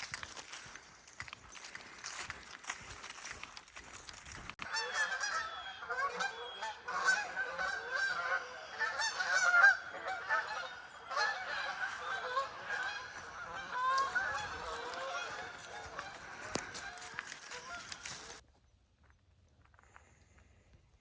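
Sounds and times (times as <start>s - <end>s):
flock of geese honking: 4.6s - 18.4s.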